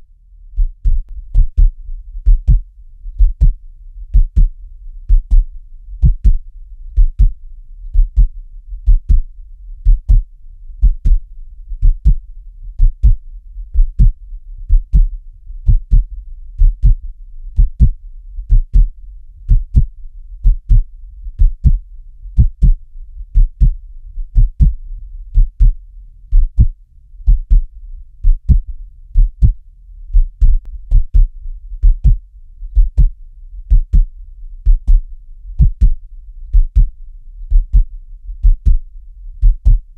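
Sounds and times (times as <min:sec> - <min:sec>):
heartbeat thumps: 0:00.0 - 0:39.9
low steady hum: 0:00.0 - 0:39.9.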